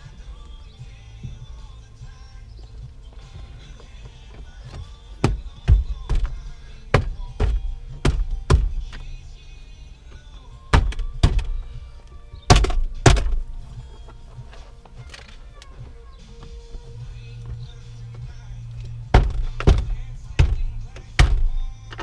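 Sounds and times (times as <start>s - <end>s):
background music: 0.0s - 22.0s
door trim panel knocking: 5.2s - 8.8s, 19.1s - 21.6s.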